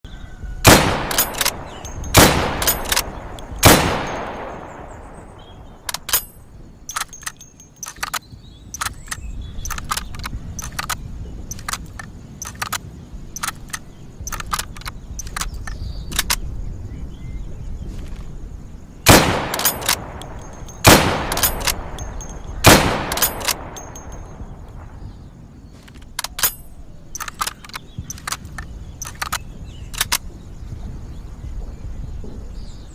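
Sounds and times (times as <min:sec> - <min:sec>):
rifle shots echoing: 0:00.6 - 0:07.3, 0:19.1 - 0:25.0
rifle bolt clicking: 0:00.7 - 0:04.7, 0:05.8 - 0:06.3, 0:06.9 - 0:08.2, 0:08.8 - 0:12.8, 0:13.4 - 0:16.4, 0:19.1 - 0:24.3, 0:25.8 - 0:30.2.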